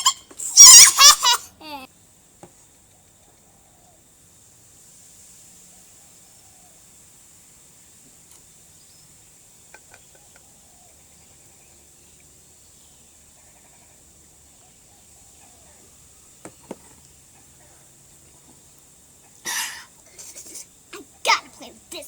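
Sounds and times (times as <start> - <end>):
fizzing hiss: 4.2 - 10.0, 18.5 - 22.0.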